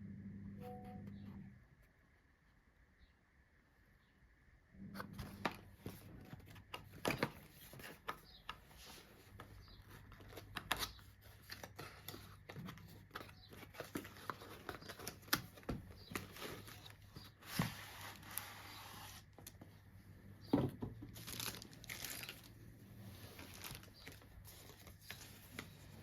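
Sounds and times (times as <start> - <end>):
low steady hum: 0.0 - 7.3
packaging rustling and crinkling: 5.2 - 19.5, 21.1 - 26.0.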